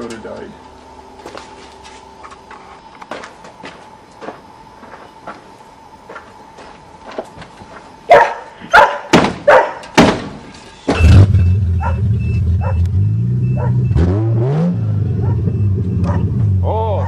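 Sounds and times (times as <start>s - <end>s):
dog barking: 8.1s - 9.9s, 11.8s - 12.8s, 13.6s - 13.8s, 15.2s - 15.5s, 16.1s - 16.3s
car engine starting and running: 10.9s - 17.0s.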